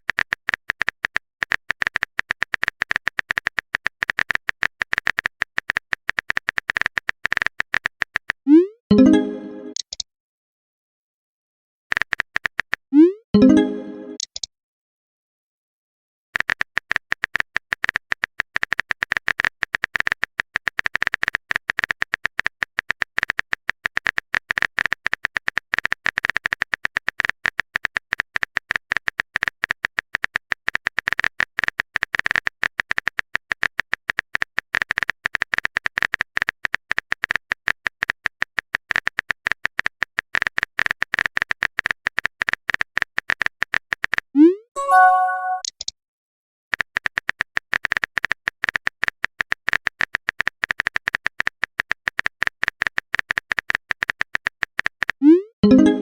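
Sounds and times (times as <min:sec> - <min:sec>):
keyboard typing clicks: 0:00.0 - 0:10.0, 0:13.4 - 0:14.5, 0:44.8 - 0:45.9, 0:46.7 - 0:56.0.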